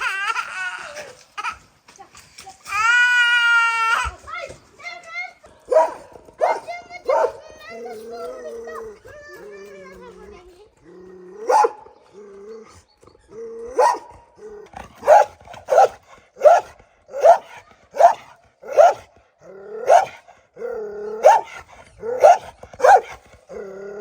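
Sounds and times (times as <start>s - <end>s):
dog barking: 5.7s - 8.5s, 11.4s - 12.0s, 13.7s - 14.3s, 14.9s - 19.1s, 19.8s - 23.2s
dog whining: 5.7s - 24.0s.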